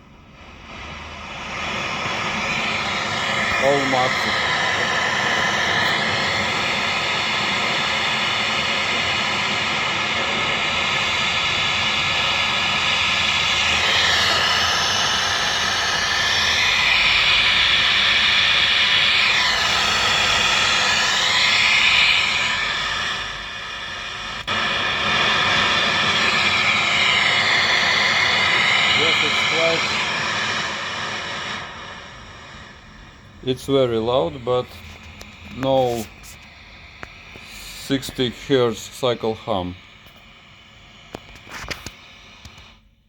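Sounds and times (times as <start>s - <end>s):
guitar amp hissing: 0.0s - 42.8s.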